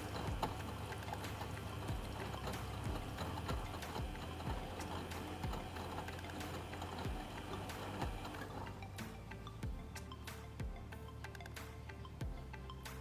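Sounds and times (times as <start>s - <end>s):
water and laundry in drum: 0.0s - 8.8s
washing machine motor hum: 0.0s - 9.1s.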